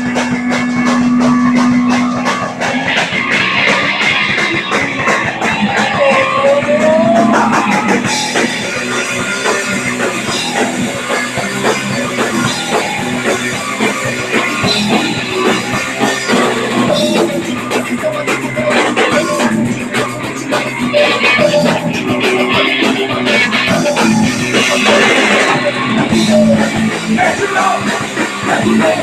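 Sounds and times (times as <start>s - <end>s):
drum kit: 0.0s - 29.0s
electric guitars: 0.0s - 29.0s
punk rock band playing live: 0.0s - 29.0s.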